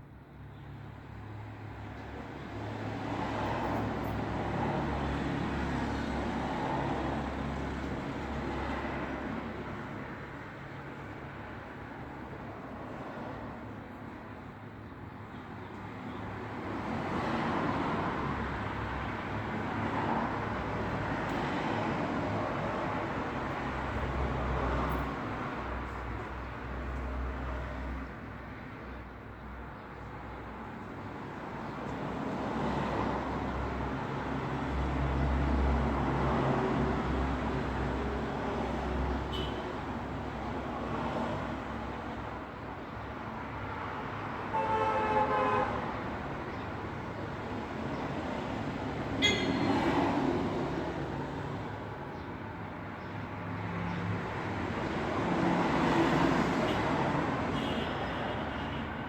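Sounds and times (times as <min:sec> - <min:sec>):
vehicles passing: 0:00.2 - 0:59.0
car horn: 0:39.3 - 0:39.7, 0:44.5 - 0:45.9, 0:49.2 - 0:49.6, 0:57.5 - 0:59.0.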